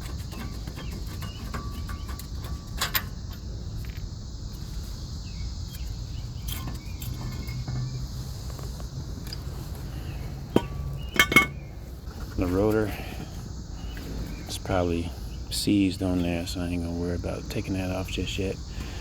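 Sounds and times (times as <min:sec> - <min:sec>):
metal tools clinking: 0:00.0 - 0:04.1, 0:06.4 - 0:07.8, 0:10.5 - 0:11.6
steady high hiss: 0:02.8 - 0:19.0.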